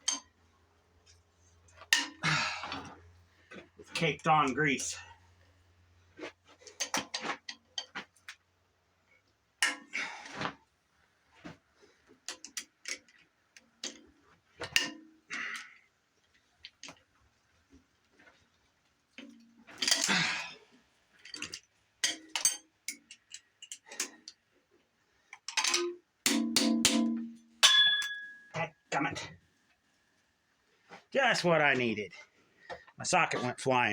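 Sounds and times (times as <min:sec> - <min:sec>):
metal tool clinks: 0:25.5 - 0:28.7.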